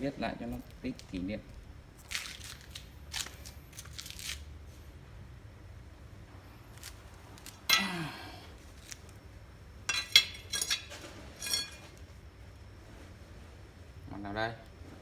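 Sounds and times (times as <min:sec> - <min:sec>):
ceramic tile pieces clinking: 0:09.9 - 0:11.8.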